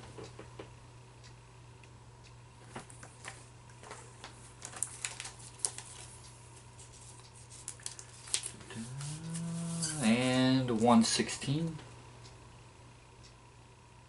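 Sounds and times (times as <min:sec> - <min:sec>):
steady low hum: 0:00.0 - 0:14.0
paper rustling: 0:04.6 - 0:06.2, 0:06.8 - 0:09.2.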